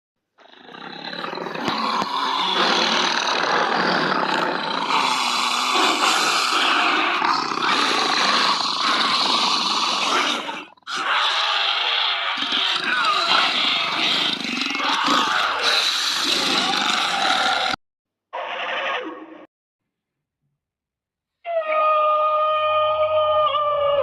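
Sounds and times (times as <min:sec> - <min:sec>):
monster roar: 0:00.4 - 0:17.8.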